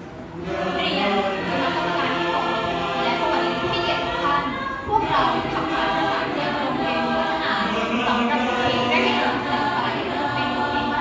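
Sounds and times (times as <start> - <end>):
choir singing in harmony: 0.1 - 11.0.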